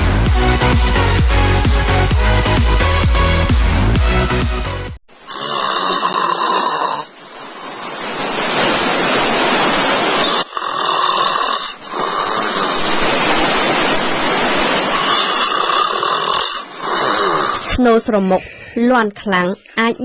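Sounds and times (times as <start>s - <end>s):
person snoring loudly: 5.3s - 7.2s, 10.2s - 13.2s, 14.9s - 17.8s.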